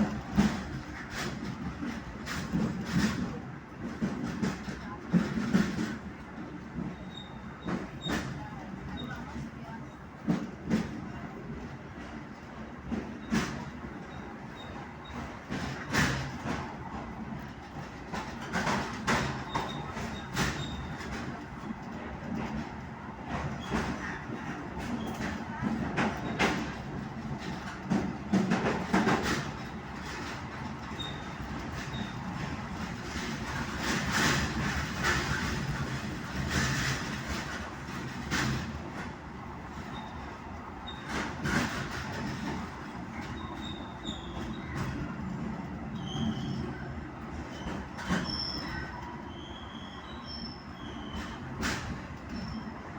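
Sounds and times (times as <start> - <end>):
train wheels clacking over rail joints: 0.0 - 9.2, 10.2 - 45.2, 46.0 - 48.9, 50.9 - 52.6
train rumble: 0.0 - 52.9
high wheel squeals: 43.2 - 44.8, 47.5 - 51.4.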